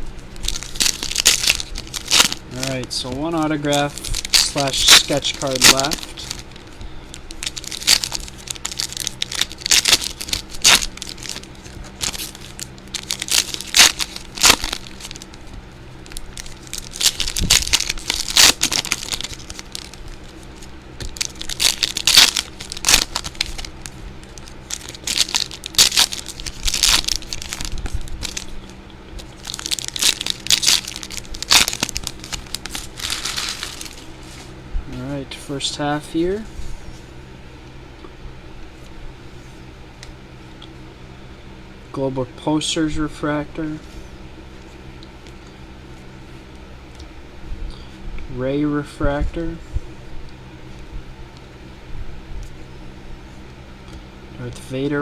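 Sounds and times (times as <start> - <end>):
wrappers torn and crinkled: 0.3 - 34.5.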